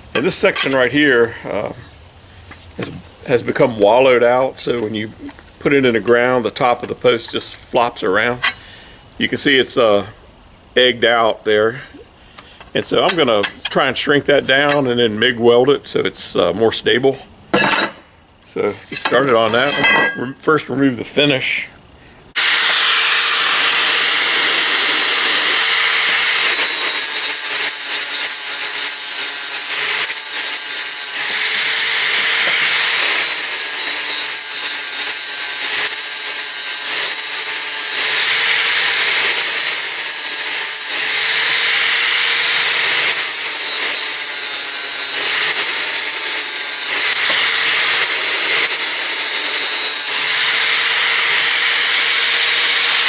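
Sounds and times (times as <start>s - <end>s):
abrasive grinding on metal: 22.4s - 53.0s
grinder motor running: 22.4s - 53.0s.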